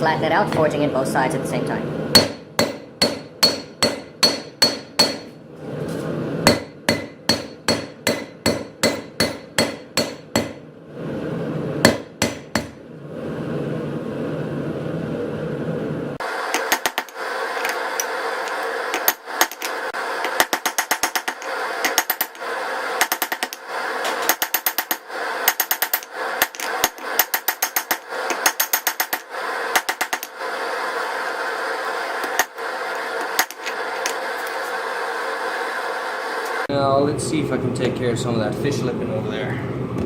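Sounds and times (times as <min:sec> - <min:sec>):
hammer ringing on anvil: 0:02.2 - 0:05.3, 0:06.5 - 0:10.6.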